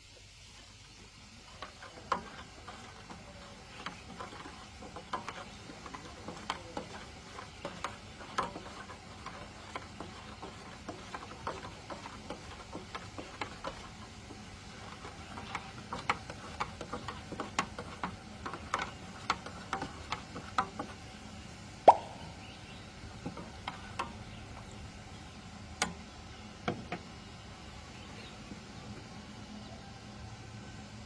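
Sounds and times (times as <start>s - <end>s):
containers and utensils clinking: 1.3s - 21.0s.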